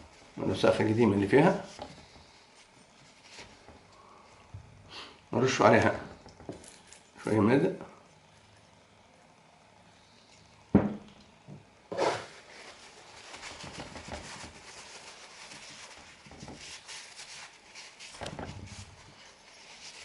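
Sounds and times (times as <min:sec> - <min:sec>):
rubbing and scraping: 0:11.9 - 0:20.0.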